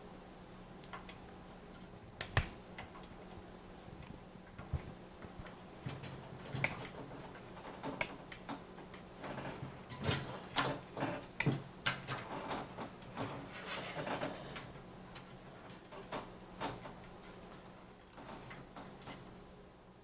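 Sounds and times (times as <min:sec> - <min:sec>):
hardware clicks and knocks: 0:04.0 - 0:19.3.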